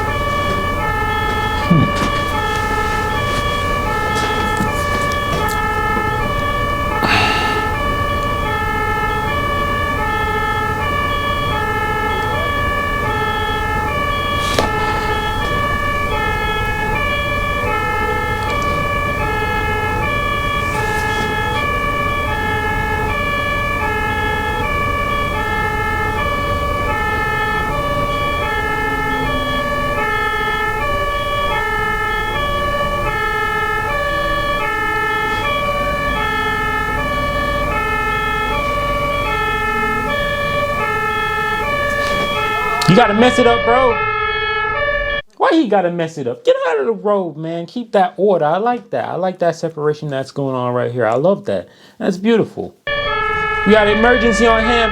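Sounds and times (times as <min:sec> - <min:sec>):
vehicle and road noise: 0:00.0 - 0:42.9
ambulance two-tone siren: 0:00.0 - 0:45.3, 0:52.9 - 0:54.9.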